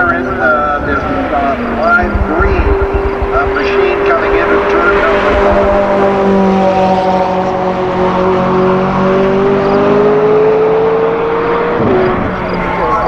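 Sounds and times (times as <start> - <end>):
car engine at high revs: 0.0 - 13.0.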